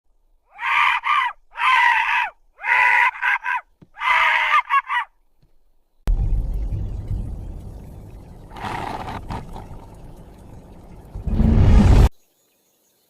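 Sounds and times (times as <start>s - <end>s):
deep low rumble: 6.1s - 12.1s.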